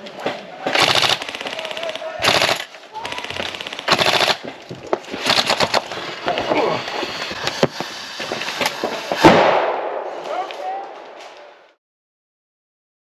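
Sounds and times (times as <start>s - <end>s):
airsoft gun bursts: 0.7s - 4.4s
airsoft single shots: 9.2s - 10.0s.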